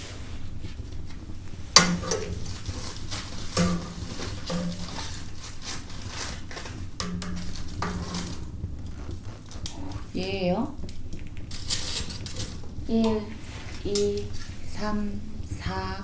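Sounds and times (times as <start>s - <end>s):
metal clanks and knocks: 1.7s - 9.9s, 11.5s - 12.8s.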